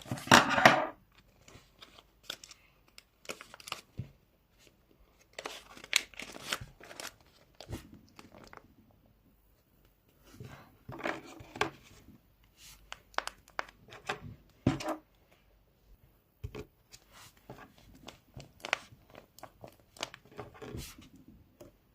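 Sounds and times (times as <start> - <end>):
toy packaging crinkling: 1.2 - 3.9, 5.3 - 8.6.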